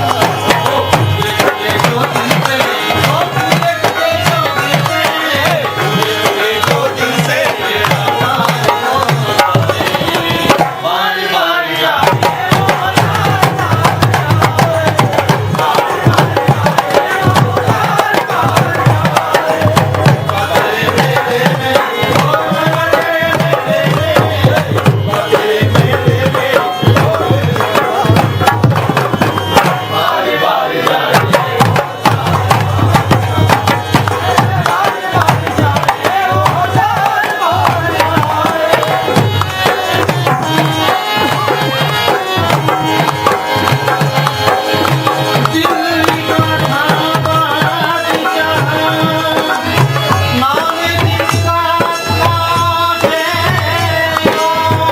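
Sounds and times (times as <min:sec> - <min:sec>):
devotional melody: 0:00.0 - 0:54.9
tabla beat: 0:00.0 - 0:54.9.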